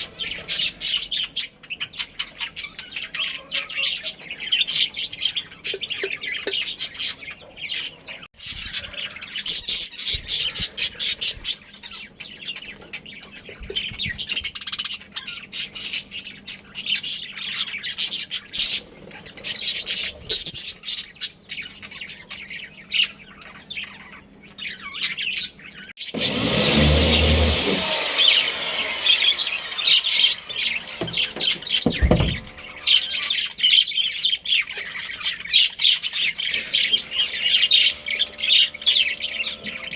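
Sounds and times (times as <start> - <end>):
budgerigars chattering and chirping: 0.0 - 26.2, 27.7 - 39.9
low thump: 31.0 - 32.7.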